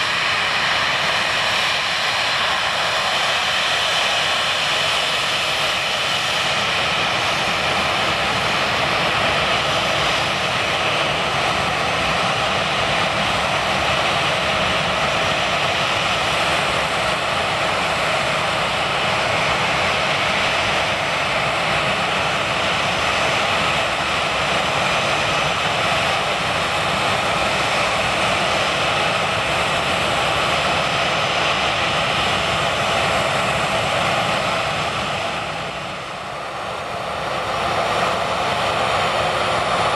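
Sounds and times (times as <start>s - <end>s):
jet engines roaring at take-off: 0.0s - 39.9s.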